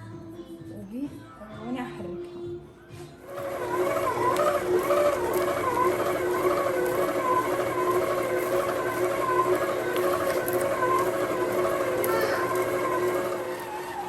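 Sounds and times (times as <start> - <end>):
electric mixer motor whine: 3.2 - 14.0.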